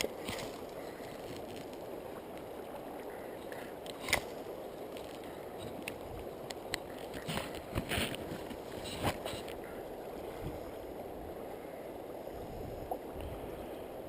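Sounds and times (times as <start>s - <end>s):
water washing around boat: 0.0s - 14.0s
wind: 0.0s - 14.0s.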